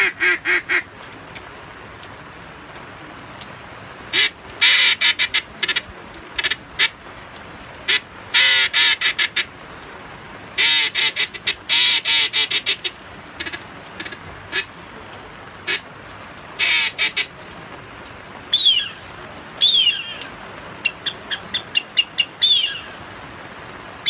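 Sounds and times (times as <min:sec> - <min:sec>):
duck calls quacking: 0:00.0 - 0:00.8, 0:04.1 - 0:07.0, 0:07.9 - 0:09.5, 0:10.6 - 0:14.7, 0:15.6 - 0:15.8, 0:16.6 - 0:17.3
heavy rain hiss: 0:00.0 - 0:24.0.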